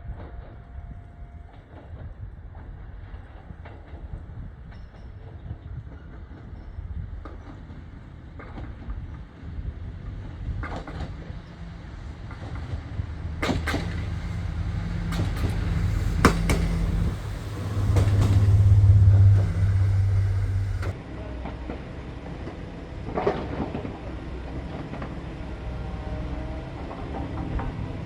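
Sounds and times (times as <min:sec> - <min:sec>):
railcar engine drone: 0:00.0 - 0:28.0
wheel clacks over rail joints: 0:10.2 - 0:21.0.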